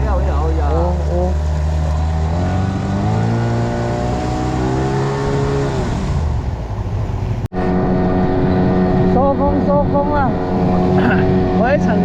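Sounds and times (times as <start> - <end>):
small boat motor: 0.0 - 4.7
wind and water rushing: 1.3 - 12.0.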